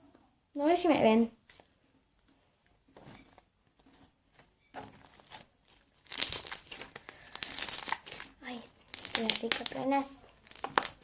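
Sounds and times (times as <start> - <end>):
slime crackling and popping: 5.0 - 11.0.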